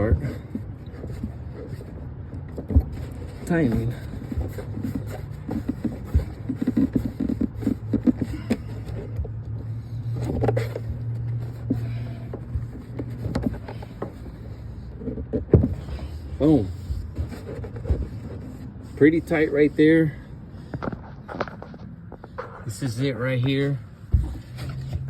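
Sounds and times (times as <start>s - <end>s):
hose coupling clicks and scrapes: 0.0s - 16.6s.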